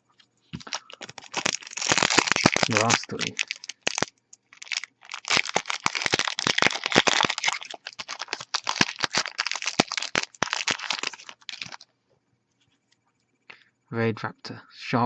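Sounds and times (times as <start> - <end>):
foil wrapper tearing and crinkling: 0.6 - 11.8.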